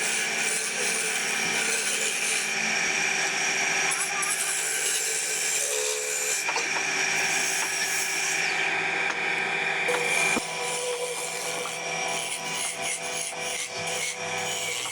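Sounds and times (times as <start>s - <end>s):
wood lathe tool scraping wood: 9.9s - 14.9s.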